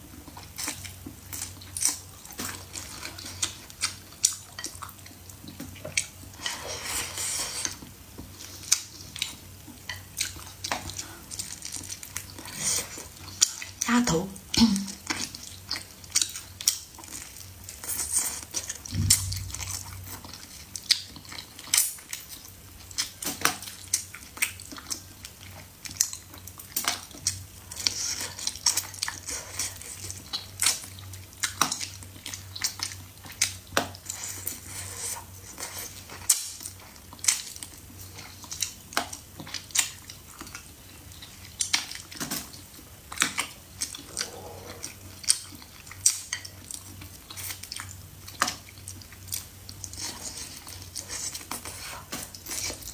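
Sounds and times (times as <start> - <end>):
chewing and biting: 14.9 - 52.9.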